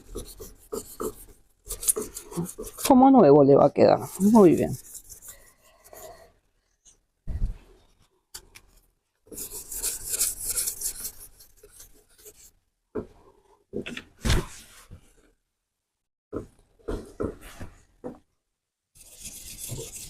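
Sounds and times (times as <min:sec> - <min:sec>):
sandpaper scratchy rubbing: 0:04.0 - 0:05.5, 0:09.3 - 0:12.5, 0:19.0 - 0:20.0.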